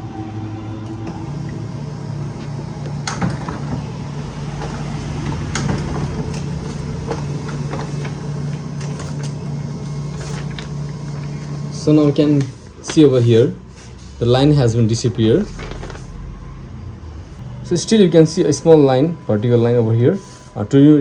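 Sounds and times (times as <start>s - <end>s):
printer motor hum: 0.0s - 21.0s
paper feed clicks and clacks: 4.5s - 11.5s.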